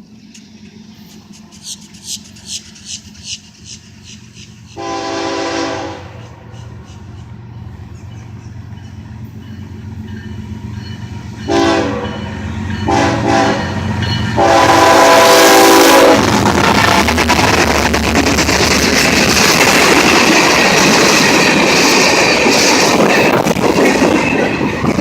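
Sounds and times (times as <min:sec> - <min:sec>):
locomotive engine rumble: 0:00.0 - 0:25.0
train wheels on rail: 0:00.0 - 0:25.0
train air horn blasts: 0:04.8 - 0:06.5, 0:11.5 - 0:13.8, 0:14.4 - 0:16.4.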